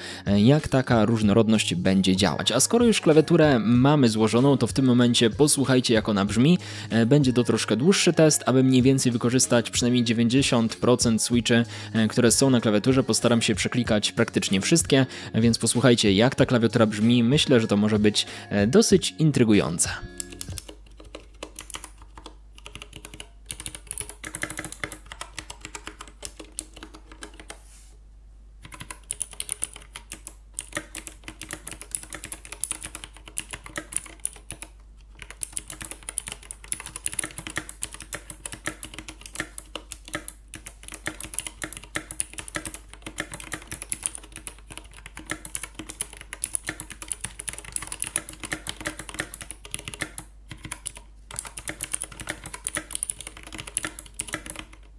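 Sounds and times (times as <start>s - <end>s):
mechanical keyboard typing: 20.2s - 27.6s, 28.6s - 54.9s.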